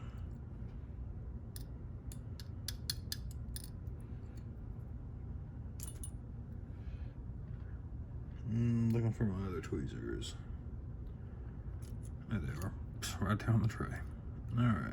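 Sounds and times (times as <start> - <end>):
steady low hum: 0.0 - 14.9
metal tools clicking: 1.6 - 3.8.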